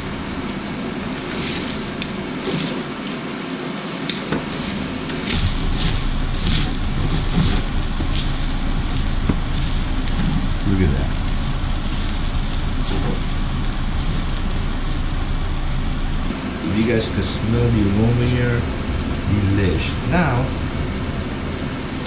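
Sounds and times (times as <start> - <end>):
eggs and rice sizzling in a pan: 0.0 - 16.9
low rumble: 4.4 - 22.0.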